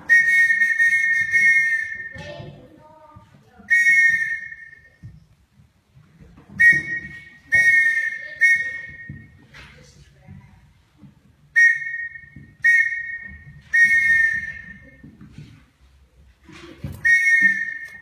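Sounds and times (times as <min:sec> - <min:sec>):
whistle blasts in morse code: 0:00.0 - 0:02.3, 0:03.7 - 0:05.0, 0:06.6 - 0:09.3, 0:11.6 - 0:15.0, 0:17.0 - 0:18.0.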